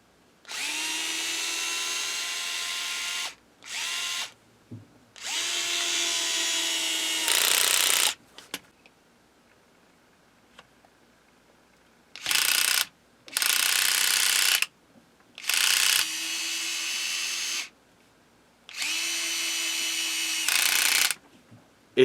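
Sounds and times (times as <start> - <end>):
electric screwdriver motor: 0.5 - 4.3, 5.2 - 8.2, 12.2 - 14.7, 15.4 - 17.7, 18.7 - 21.2.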